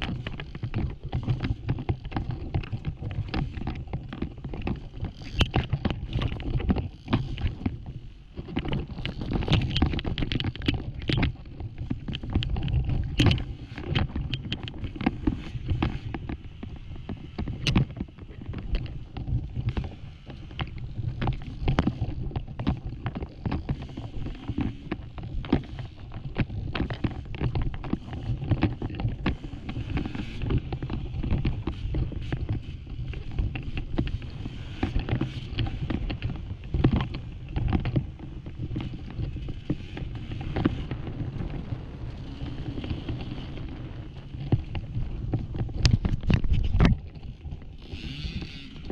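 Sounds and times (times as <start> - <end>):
rocks knocking and clattering: 0.0 - 48.9
dirt bike engine running hard: 47.9 - 48.9.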